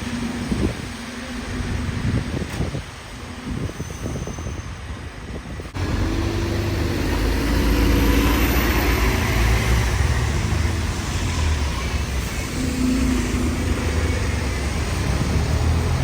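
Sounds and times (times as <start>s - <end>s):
bus engine rumbling: 0.0s - 16.0s.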